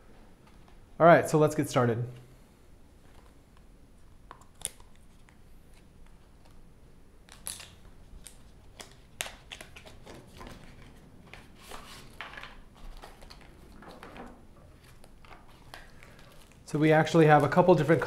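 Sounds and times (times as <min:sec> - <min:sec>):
packaging rustling and clicking: 0:07.3 - 0:16.7.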